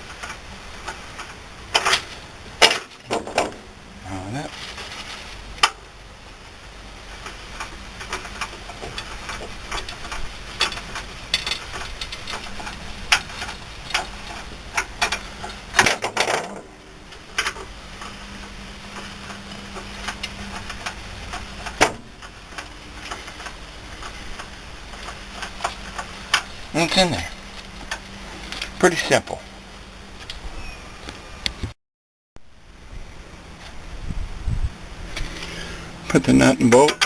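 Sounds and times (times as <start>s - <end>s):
metal clicks and clanks: 0.0s - 3.6s, 7.2s - 29.2s, 36.1s - 37.0s.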